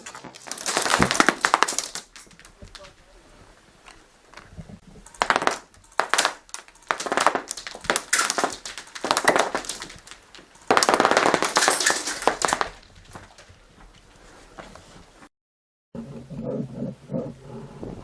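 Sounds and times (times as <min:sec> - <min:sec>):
airsoft guns firing bursts: 0:05.1 - 0:12.8.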